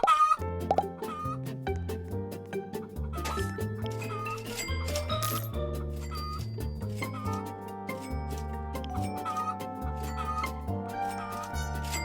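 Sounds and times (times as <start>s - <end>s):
chicken clucking: 0.0s - 1.4s
light children's music: 0.0s - 12.0s.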